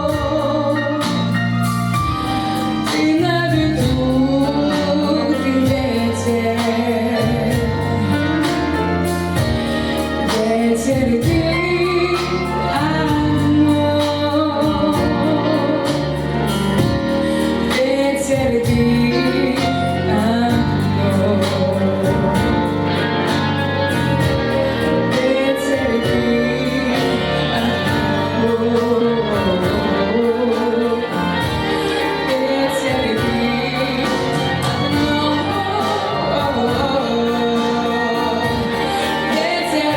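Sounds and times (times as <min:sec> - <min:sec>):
instrumental accompaniment with beat: 0:00.0 - 0:39.9
girl singing pop song: 0:10.2 - 0:16.2, 0:17.5 - 0:22.9.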